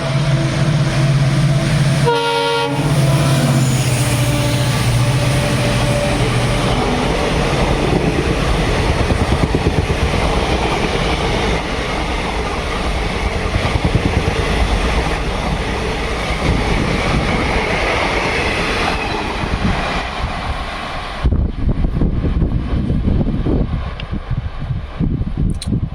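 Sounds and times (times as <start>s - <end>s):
train horn: 0.0s - 7.9s
train wheels rumbling on rails: 0.0s - 25.9s.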